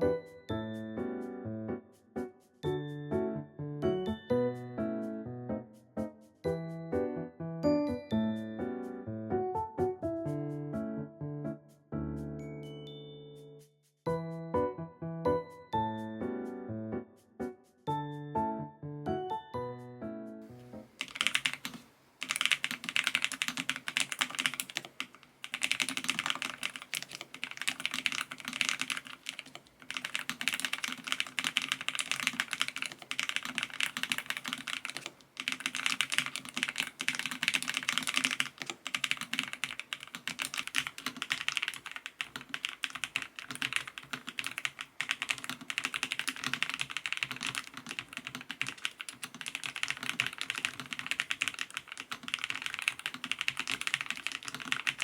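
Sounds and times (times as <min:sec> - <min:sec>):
fast mechanical keyboard typing: 0:21.0 - 0:55.0.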